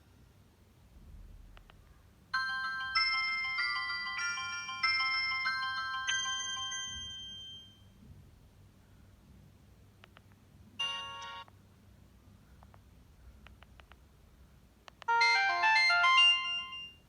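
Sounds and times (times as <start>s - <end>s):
phone ringtone bell melody: 2.4s - 7.9s, 10.8s - 11.5s, 15.1s - 17.0s.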